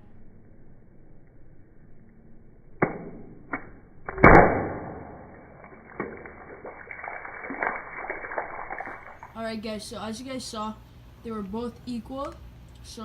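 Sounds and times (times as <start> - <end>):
sharp snaps and impacts: 2.8 - 9.4.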